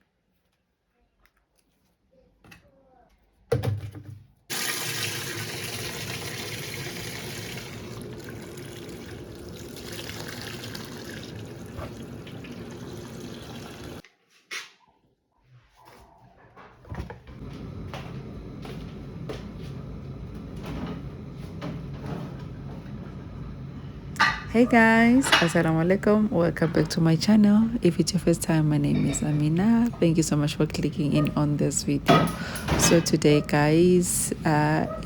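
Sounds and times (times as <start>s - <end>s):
kitchen clatters: 24.1s - 35.0s.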